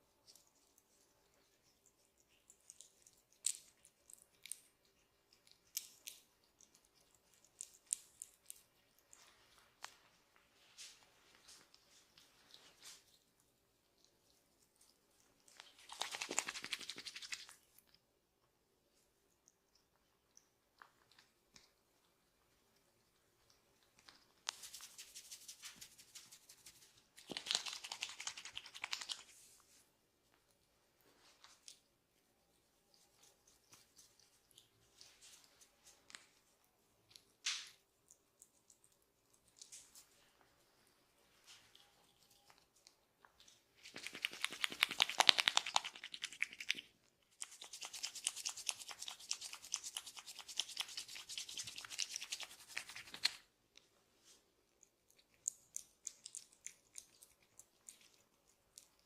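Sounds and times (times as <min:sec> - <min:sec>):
fingers rustling through hair: 0:00.0 - 0:17.9, 0:20.8 - 0:59.0
fingers clicking during head massage: 0:15.8 - 0:17.5, 0:24.5 - 0:29.3, 0:43.9 - 0:46.8, 0:47.4 - 0:53.4.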